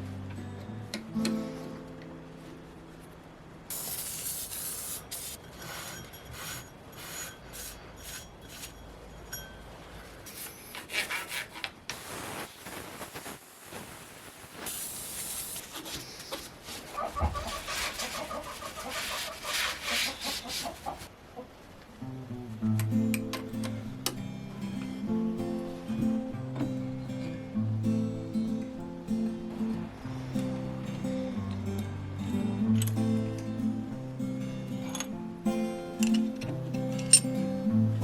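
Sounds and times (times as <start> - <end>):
hand rubbing and scraping: 10.1 - 21.1.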